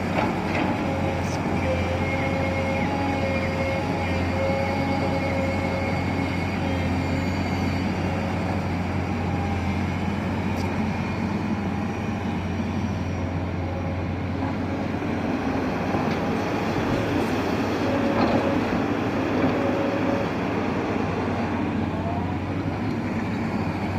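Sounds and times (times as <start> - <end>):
excavator diesel engine running: 0.0 - 23.9.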